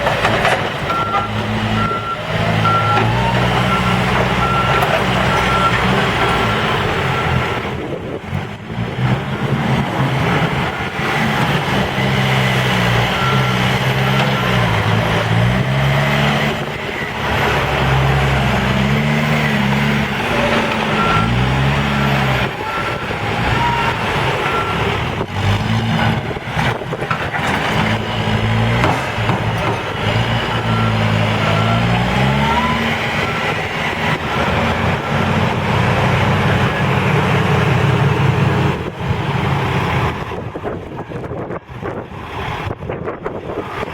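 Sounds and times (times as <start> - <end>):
clunks: 0.0 - 7.6, 8.2 - 35.0
diesel engine revving: 0.0 - 43.9.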